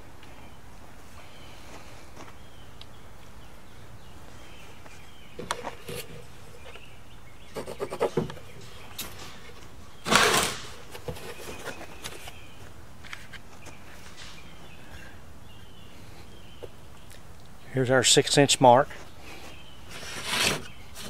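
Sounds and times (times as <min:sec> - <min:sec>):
loud rasping scrape: 0:19.9 - 0:20.8.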